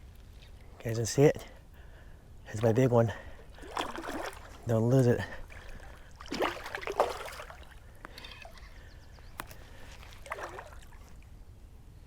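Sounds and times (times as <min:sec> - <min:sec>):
fish splashing in water: 0:03.4 - 0:04.6, 0:05.4 - 0:08.6, 0:09.4 - 0:11.2.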